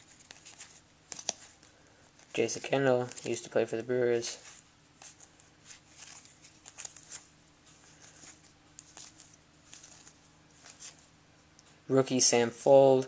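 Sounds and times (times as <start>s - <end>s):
trading cards rustling: 0.0s - 11.1s.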